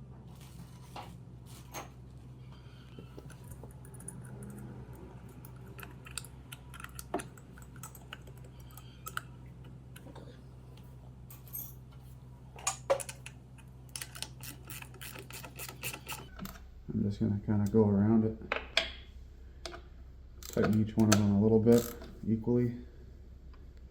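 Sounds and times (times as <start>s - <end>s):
steady low hum: 0.0s - 23.9s
metal parts and tools clicking: 5.4s - 9.3s, 12.6s - 16.6s.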